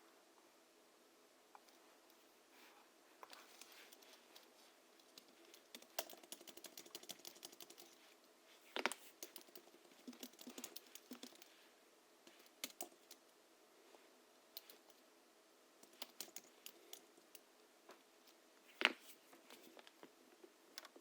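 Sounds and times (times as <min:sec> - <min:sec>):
keyboard typing: 0:05.0 - 0:08.0, 0:08.8 - 0:11.5, 0:12.4 - 0:13.2, 0:14.6 - 0:15.0, 0:15.8 - 0:17.4.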